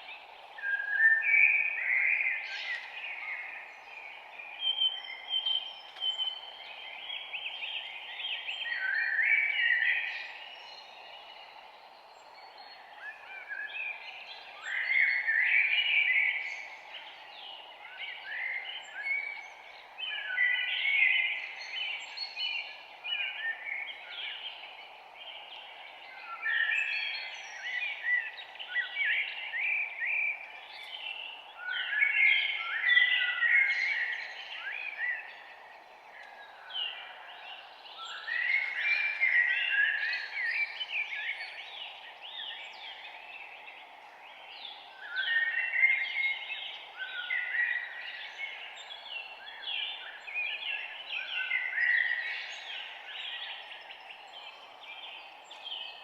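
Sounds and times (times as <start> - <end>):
forest ambience hiss: 0.0 - 56.0
songbirds chirping: 0.0 - 56.0.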